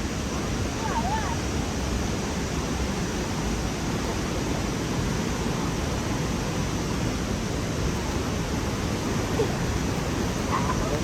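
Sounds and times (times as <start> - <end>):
waterfall roaring: 1.0 - 11.0.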